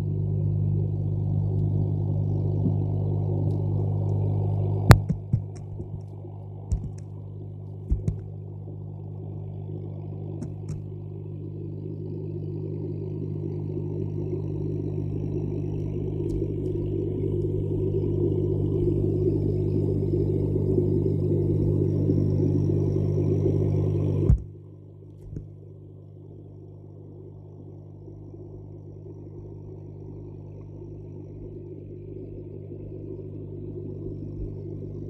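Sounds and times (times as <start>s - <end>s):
low mechanical hum: 0.0s - 35.0s.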